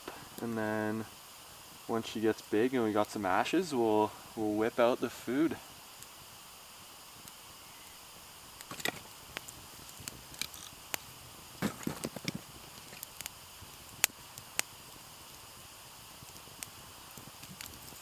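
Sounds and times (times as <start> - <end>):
campfire crackling: 0.0 - 18.0.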